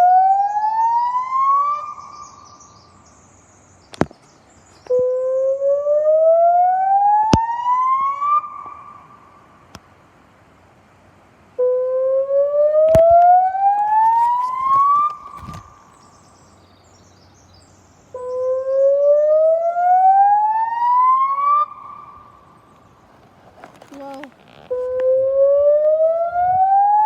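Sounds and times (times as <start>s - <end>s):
rising siren wail: 0.0s - 2.2s, 4.9s - 9.0s, 11.6s - 15.3s, 18.4s - 22.2s, 24.8s - 27.0s.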